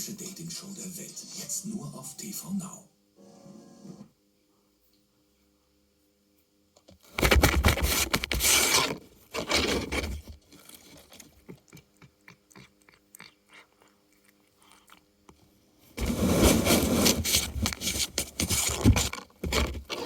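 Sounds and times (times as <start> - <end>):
cardboard scraping and crunching: 7.2 - 10.4, 16.0 - 20.0.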